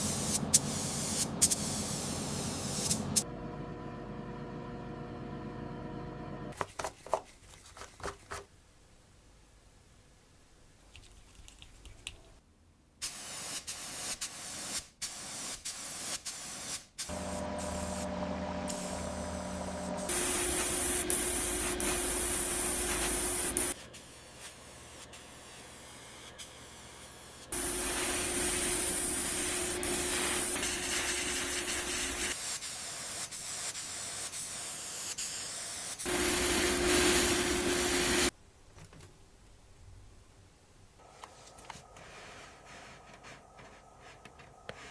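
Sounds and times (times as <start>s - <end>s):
spray paint hissing: 0.0s - 3.2s, 13.0s - 17.2s, 19.9s - 38.3s
scraping and rubbing strokes: 27.4s - 32.4s, 41.1s - 44.9s.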